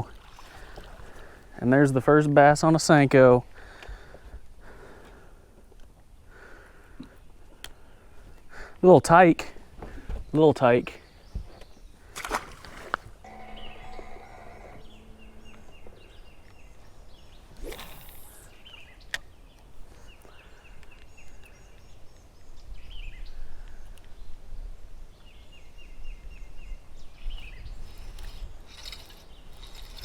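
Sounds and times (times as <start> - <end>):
steady hum: 12.6 - 18.6.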